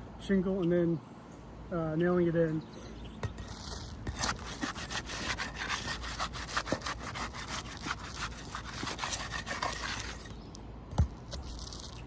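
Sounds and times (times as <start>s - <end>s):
roof shingle scraping and crackling: 3.5s - 10.4s, 11.2s - 12.0s.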